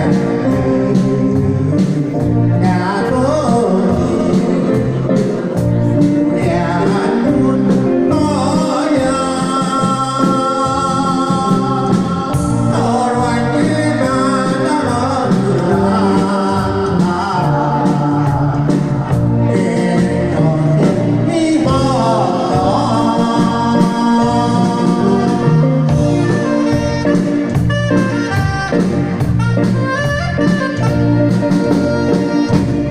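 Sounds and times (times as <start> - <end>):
backing track with steady beat: 0.0 - 32.9.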